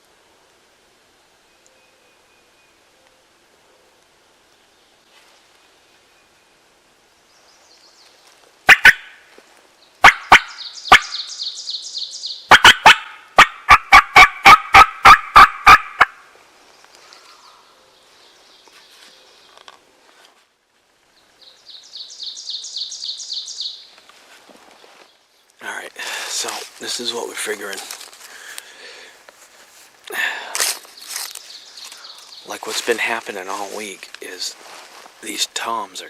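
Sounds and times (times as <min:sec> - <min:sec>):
songbird trill: 0:01.4 - 0:03.4, 0:05.7 - 0:13.7, 0:21.1 - 0:24.1, 0:30.9 - 0:33.9
turkey call hen yelps: 0:08.7 - 0:09.2, 0:10.0 - 0:11.5, 0:12.5 - 0:16.2.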